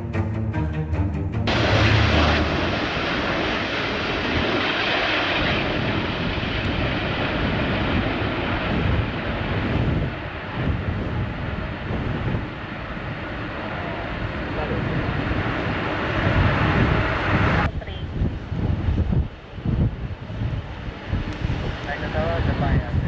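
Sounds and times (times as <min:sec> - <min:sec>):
jet engines roaring: 0:01.5 - 0:10.6.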